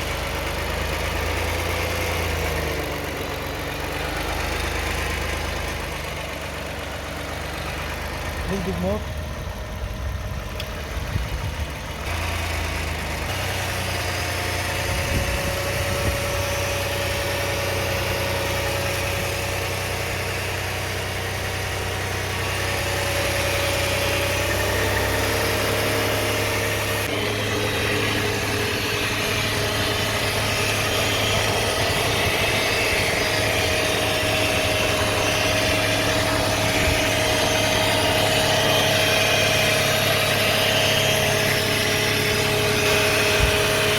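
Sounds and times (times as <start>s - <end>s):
car engine hum at low revs: 0.0s - 43.9s
steady whine: 14.0s - 43.9s.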